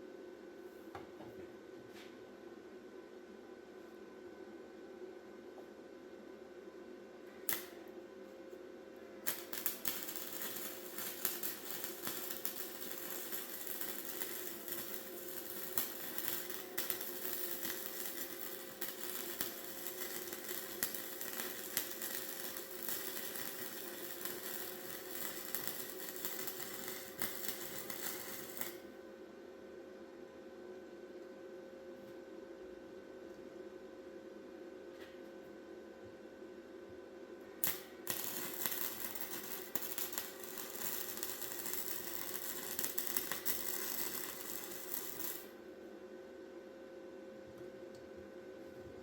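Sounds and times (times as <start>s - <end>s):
welding arc crackling: 7.5s - 7.8s, 9.2s - 28.8s, 37.6s - 45.6s.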